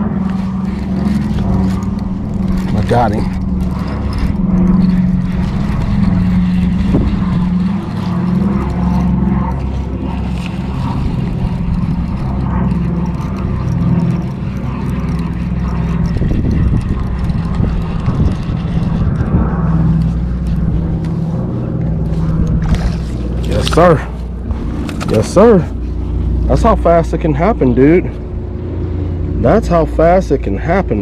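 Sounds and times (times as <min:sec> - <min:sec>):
sharp noises: 0:00.0 - 0:29.5
boat motor humming: 0:00.0 - 0:31.0.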